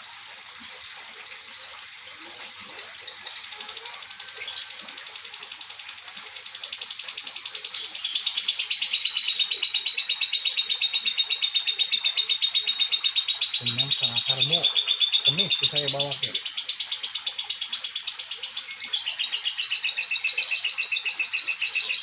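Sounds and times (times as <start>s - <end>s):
lovebird chattering trill: 6.4s - 22.0s.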